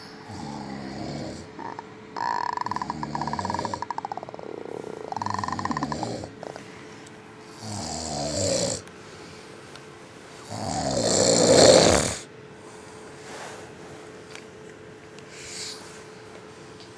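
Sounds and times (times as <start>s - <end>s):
child imitating snoring: 0.0s - 6.6s, 7.6s - 8.8s, 10.5s - 12.3s.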